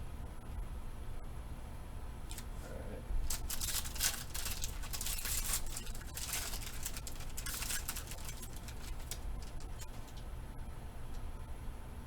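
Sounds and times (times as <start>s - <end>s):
cards being handled: 3.2s - 10.3s
wrapper crinkling and tearing: 3.2s - 10.3s.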